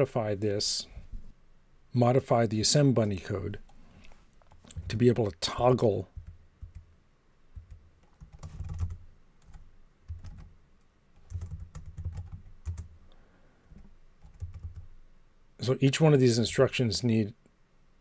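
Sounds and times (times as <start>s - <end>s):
computer keyboard typing: 6.1s - 6.9s, 7.6s - 10.5s, 11.2s - 12.9s, 14.2s - 14.9s.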